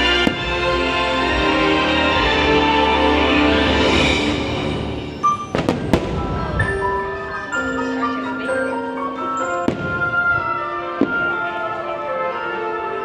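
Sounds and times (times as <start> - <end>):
festive music with mallet tones: 0.0 - 13.0.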